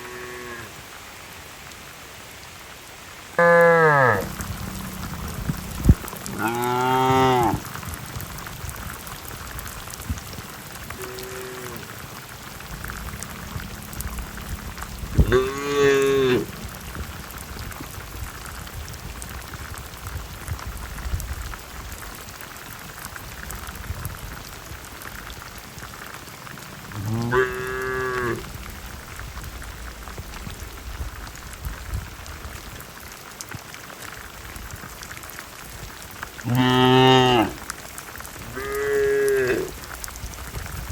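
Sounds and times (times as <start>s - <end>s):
cattle mooing: 0.0s - 0.7s, 3.4s - 5.3s, 6.3s - 7.7s, 11.0s - 11.8s, 13.0s - 16.6s, 27.0s - 28.5s, 36.5s - 37.6s, 38.5s - 39.7s
heavy rain hiss: 0.0s - 40.9s.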